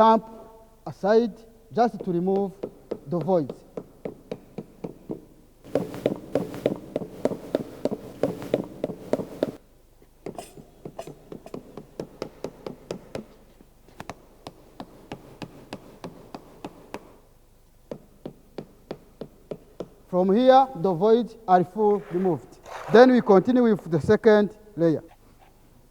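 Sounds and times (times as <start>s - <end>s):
steady hum: 21.6s - 24.8s.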